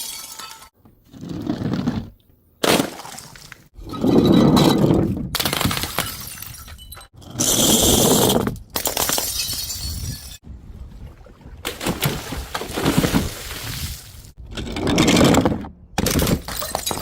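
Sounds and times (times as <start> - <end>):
glass bottles shattering: 0.0 - 0.7, 5.4 - 8.1, 8.7 - 10.4, 16.0 - 17.0.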